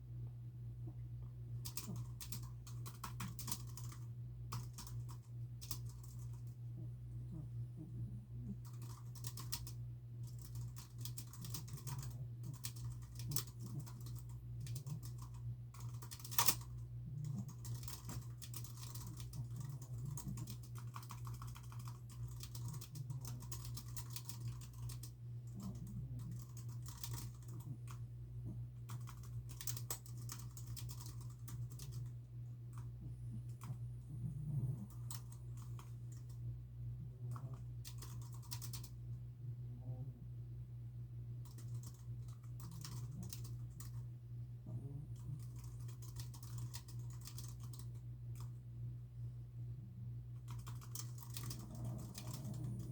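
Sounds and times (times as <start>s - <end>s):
low hum: 0.0s - 52.9s
typing on computer keyboard: 1.6s - 6.4s, 8.6s - 28.0s, 28.9s - 32.1s, 37.3s - 38.9s, 41.4s - 44.0s, 45.2s - 48.5s, 50.4s - 52.9s.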